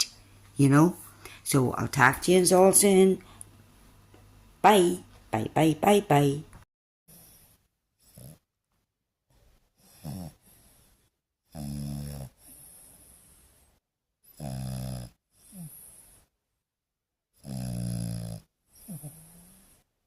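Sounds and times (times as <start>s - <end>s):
dog snoring: 7.1s - 8.5s, 9.8s - 16.3s, 17.4s - 19.9s.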